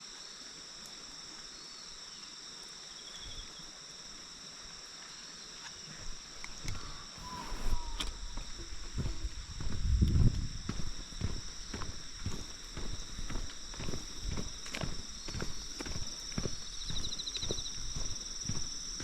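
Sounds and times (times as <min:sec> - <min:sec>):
insects trilling: 0:00.0 - 0:19.0
footsteps: 0:05.9 - 0:19.0.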